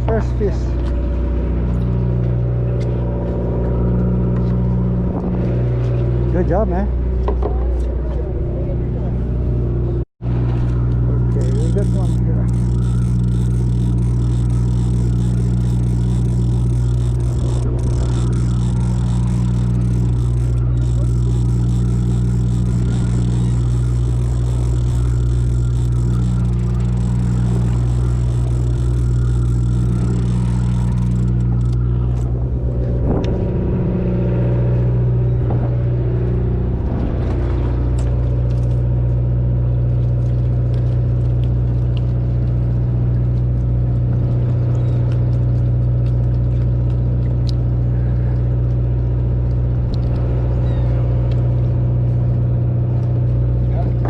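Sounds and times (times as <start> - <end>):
boat engine droning: 0.0 - 54.0.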